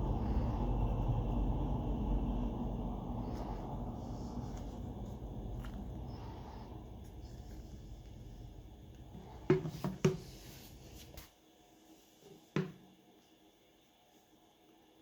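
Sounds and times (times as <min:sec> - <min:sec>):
low hum: 0:00.0 - 0:09.6.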